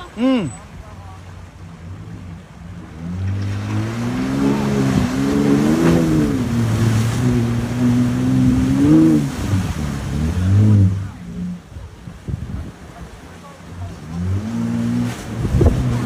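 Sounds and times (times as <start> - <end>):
engine revving hard: 2.8 - 11.6, 13.9 - 16.0.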